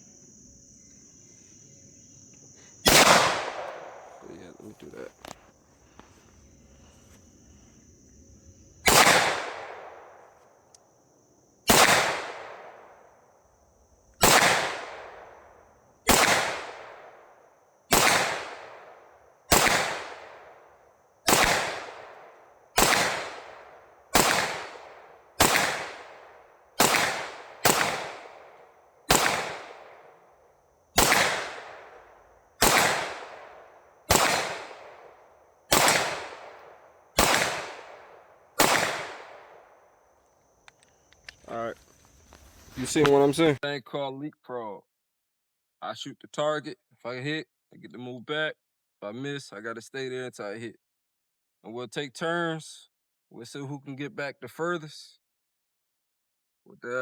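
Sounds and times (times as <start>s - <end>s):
pistol shots with echo: 2.9s - 4.3s, 8.8s - 10.1s, 11.7s - 12.9s, 14.2s - 15.4s, 16.1s - 17.2s, 17.9s - 20.6s, 21.3s - 30.1s, 31.0s - 32.0s, 32.6s - 39.6s.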